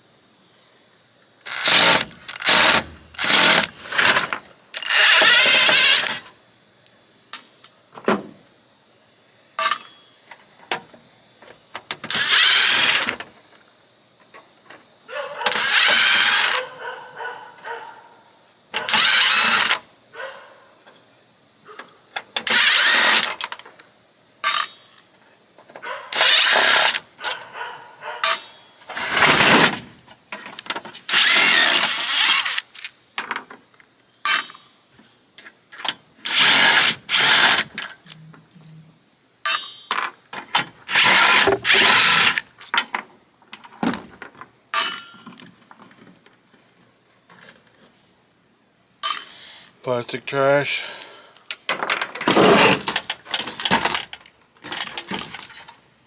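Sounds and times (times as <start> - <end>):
power drill bursts: 1.5 - 6.2, 12.0 - 13.2, 15.5 - 16.6, 18.8 - 19.8, 22.4 - 23.4, 26.2 - 27.1, 31.1 - 32.7, 36.3 - 37.7, 40.9 - 42.4.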